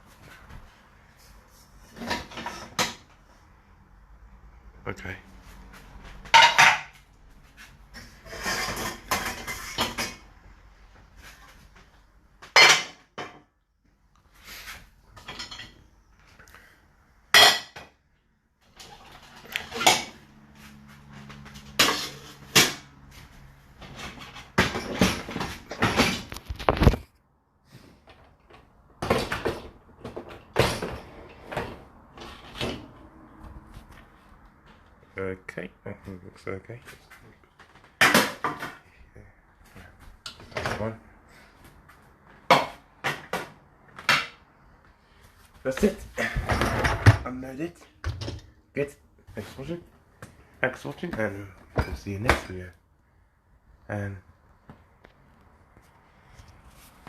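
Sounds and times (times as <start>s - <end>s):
dishes and cutlery clinking: 6.3s - 7.0s, 15.2s - 15.8s, 21.6s - 22.9s
cupboard doors opening and closing: 23.8s - 27.0s, 29.0s - 33.2s, 45.8s - 47.4s.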